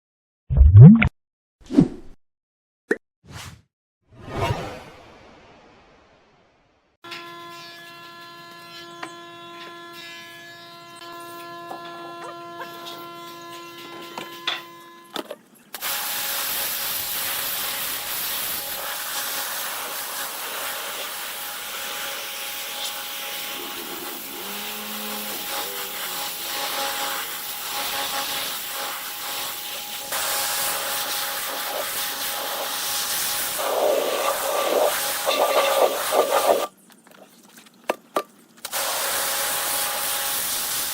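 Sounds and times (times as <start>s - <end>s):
wood being sanded: 21.9s - 32.8s.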